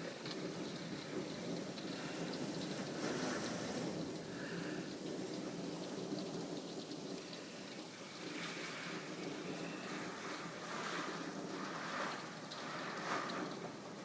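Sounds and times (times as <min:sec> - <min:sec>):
raindrop ticks: 0:00.0 - 0:14.0
steady rain hiss: 0:00.0 - 0:14.0.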